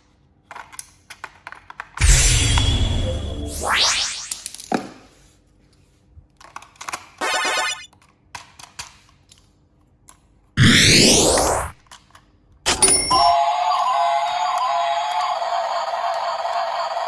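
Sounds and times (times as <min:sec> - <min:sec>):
plastic toy parts clicking: 0:00.4 - 0:02.0, 0:06.4 - 0:07.2, 0:07.9 - 0:10.5, 0:11.8 - 0:12.6
sweeping whoosh sound effect: 0:02.0 - 0:04.3.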